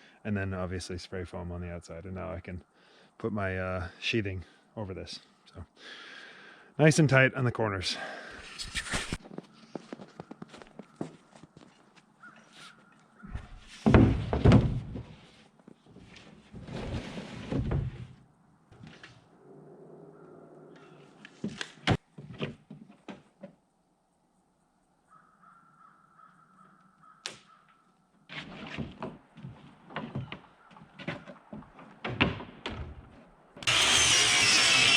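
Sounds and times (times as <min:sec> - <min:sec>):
loud knocking and scraping: 0:33.6 - 0:34.9.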